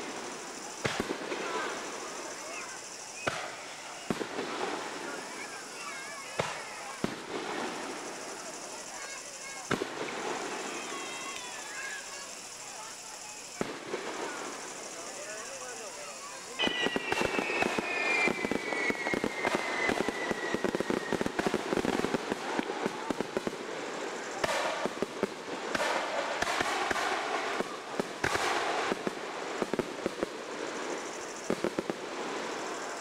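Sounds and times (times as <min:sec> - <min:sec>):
fireworks crackling and popping: 0:00.0 - 0:33.0
falling firework whistle: 0:00.6 - 0:23.4.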